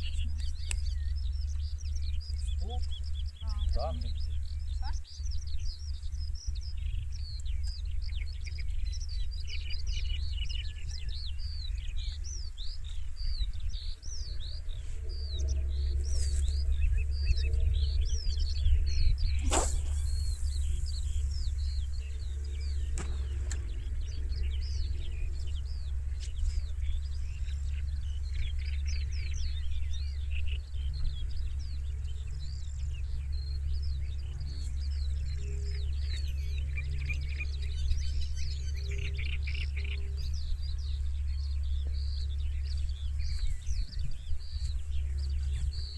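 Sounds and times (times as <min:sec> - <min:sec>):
low rumble: 0:00.0 - 0:45.9
songbirds chirping and singing: 0:00.0 - 0:45.9
sharp swish: 0:19.4 - 0:21.4.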